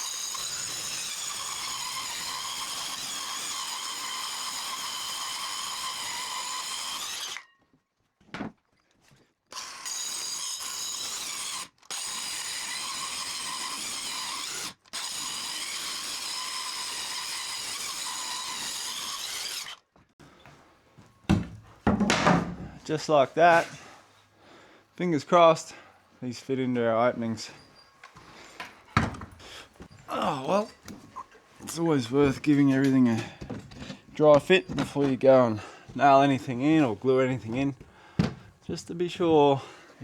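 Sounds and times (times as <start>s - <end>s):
electric saw whining: 0.0s - 7.5s, 9.6s - 19.8s.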